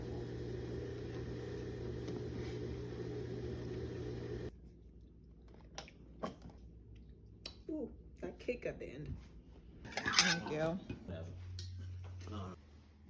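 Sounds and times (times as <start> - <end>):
motor humming: 0.0 - 4.5.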